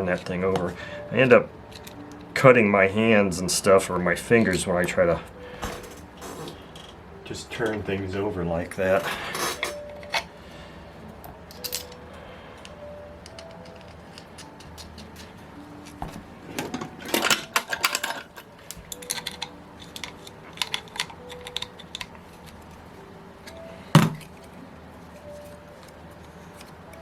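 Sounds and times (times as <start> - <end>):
small metal parts clinking: 11.5 - 12.0, 16.6 - 22.6.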